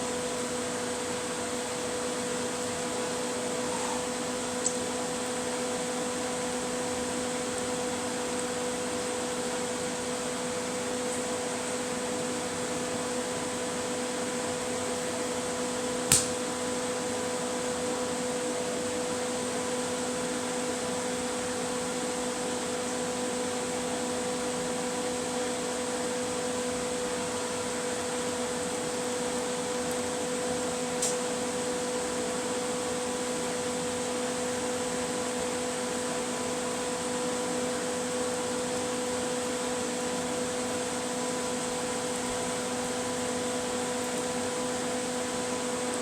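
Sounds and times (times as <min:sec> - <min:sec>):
fan humming with hiss: 0:00.0 - 0:46.0
sharp click: 0:16.1 - 0:16.4.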